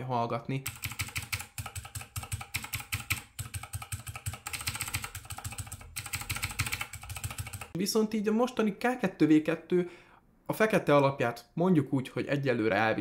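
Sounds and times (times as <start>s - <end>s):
fast mechanical keyboard typing: 0.6s - 7.8s.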